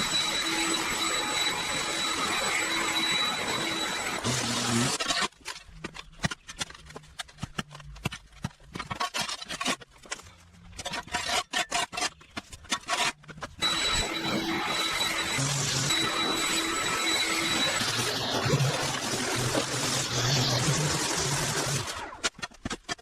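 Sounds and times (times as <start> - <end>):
clicks and scrapes: 4.4 - 13.7, 21.5 - 23.0.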